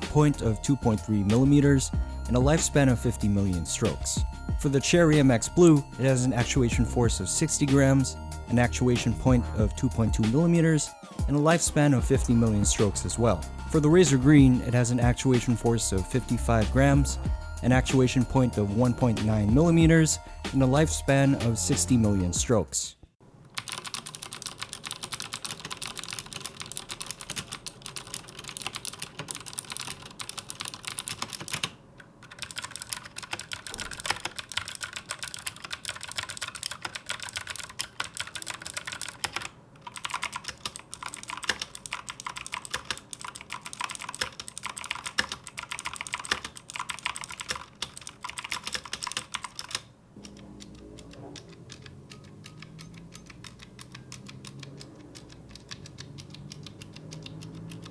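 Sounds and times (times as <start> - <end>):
clicky mechanical keyboard typing: 23.5 - 57.9.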